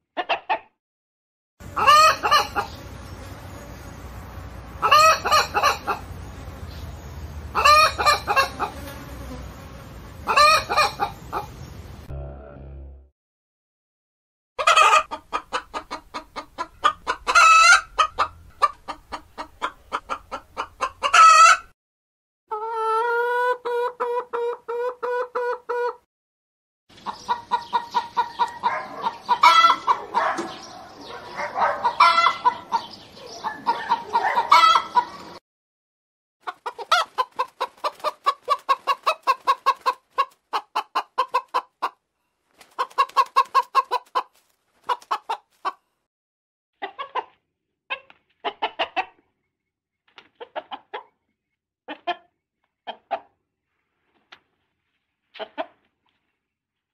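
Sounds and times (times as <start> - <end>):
hens clucking: 0.2 - 0.7, 1.6 - 2.8, 4.8 - 6.3, 7.5 - 8.8, 10.2 - 11.6, 14.6 - 21.7, 22.5 - 26.0, 26.9 - 35.4, 36.4 - 42.0, 42.6 - 45.8, 46.8 - 49.3, 50.4 - 51.2, 51.9 - 53.4, 55.4 - 55.9.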